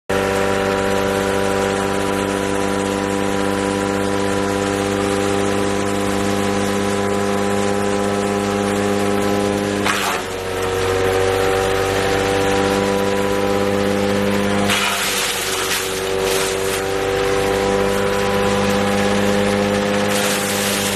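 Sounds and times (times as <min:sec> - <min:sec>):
wood chipper engine running: 0:00.1 - 0:20.9
harsh burst of noise: 0:20.0 - 0:20.9.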